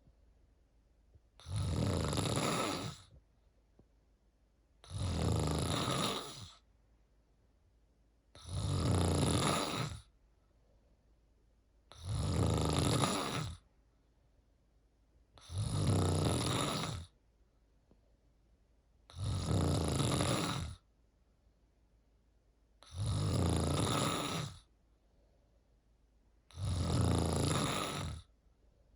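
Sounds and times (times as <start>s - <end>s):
person snoring: 1.4s - 3.1s, 4.8s - 6.6s, 8.4s - 10.1s, 11.9s - 13.6s, 15.4s - 17.1s, 19.1s - 20.8s, 22.8s - 24.7s, 26.5s - 28.3s
quiet breaths: 22.7s - 28.9s.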